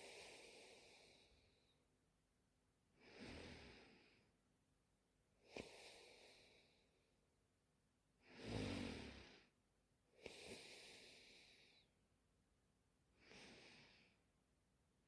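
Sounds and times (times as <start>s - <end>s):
woman snoring: 8.3s - 9.4s.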